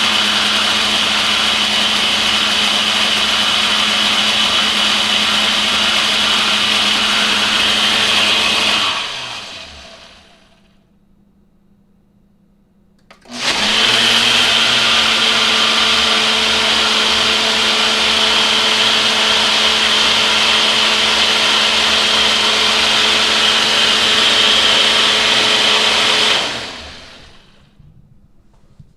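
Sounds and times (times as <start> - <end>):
blender motor whining: 0.0 - 10.8, 13.1 - 27.7
blender switch click: 13.0 - 13.5.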